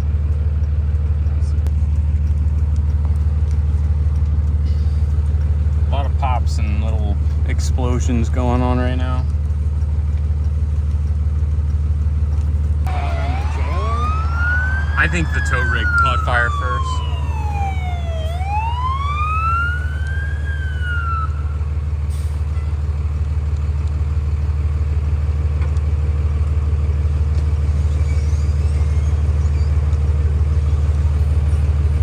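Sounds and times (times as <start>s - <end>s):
emergency siren wailing: 12.9s - 22.6s
truck driving drone: 12.9s - 22.6s.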